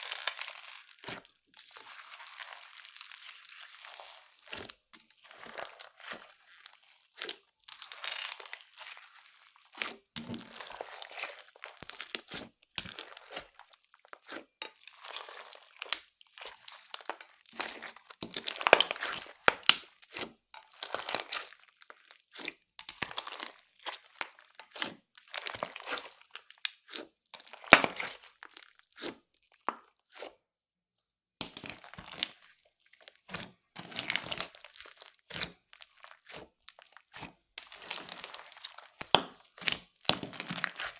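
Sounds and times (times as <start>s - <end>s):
slime crackling and popping: 0.0s - 1.3s, 15.0s - 20.1s.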